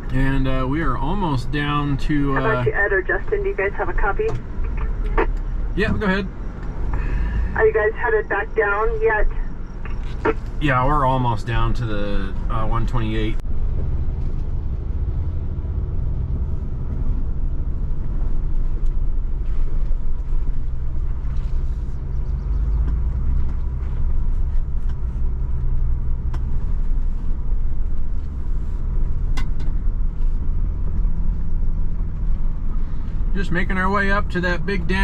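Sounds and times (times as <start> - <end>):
vehicle engine rumbling: 0.0 - 35.0.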